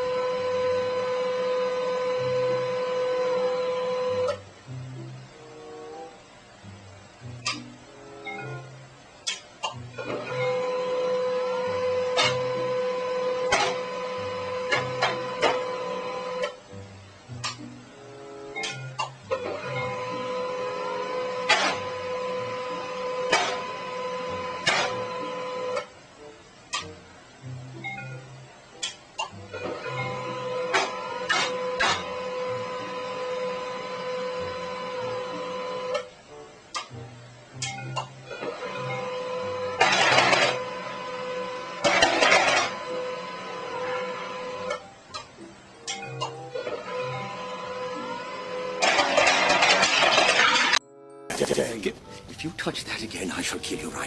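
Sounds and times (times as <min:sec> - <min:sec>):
machine whine with low hum: 0:00.0 - 0:17.4, 0:38.3 - 0:45.6
small machine whirring hum: 0:00.0 - 0:50.8.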